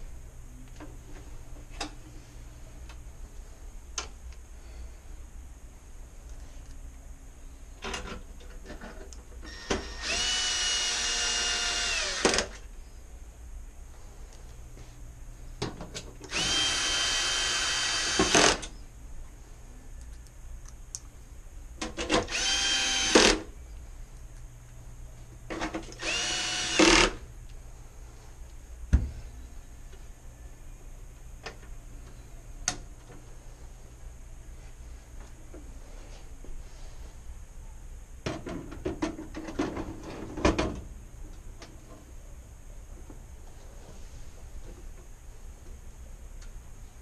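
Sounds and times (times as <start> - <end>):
power screwdriver whine: 9.5 - 12.5, 16.3 - 18.7, 22.3 - 23.4, 26.0 - 27.2.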